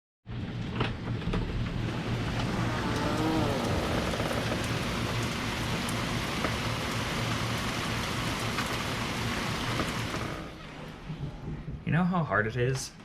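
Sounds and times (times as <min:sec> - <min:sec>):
heavy rain pouring: 0:01.6 - 0:10.8.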